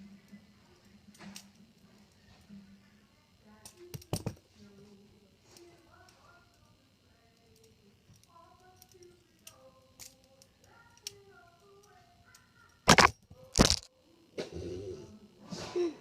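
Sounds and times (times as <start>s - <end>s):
loud sharp cracks: 12.9s - 13.8s.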